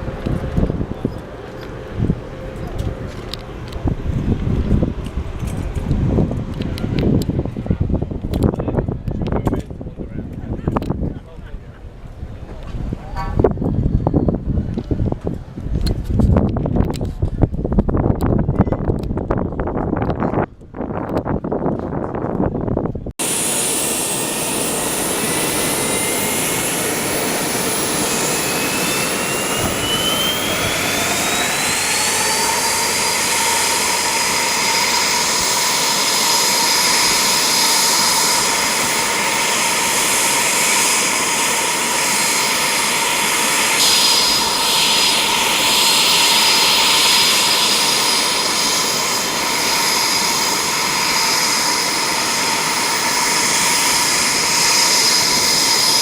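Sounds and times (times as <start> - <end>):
jet engine whining: 0.0 - 9.6, 23.2 - 56.0
rushing roar: 23.2 - 56.0.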